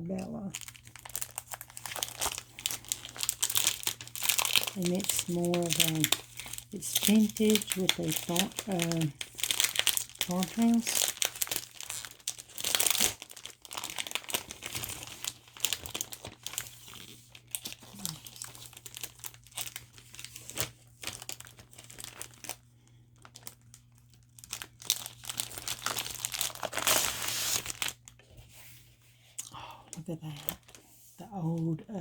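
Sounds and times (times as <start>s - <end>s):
paper crinkling and rustling: 0.5s - 29.0s.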